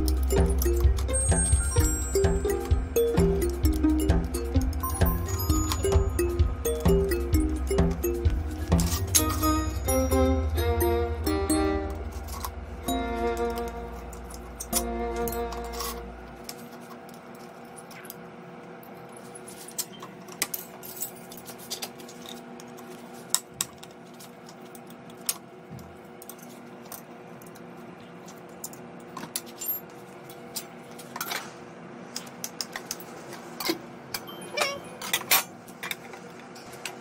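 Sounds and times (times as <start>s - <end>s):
steady low hum: 0.0s - 19.8s.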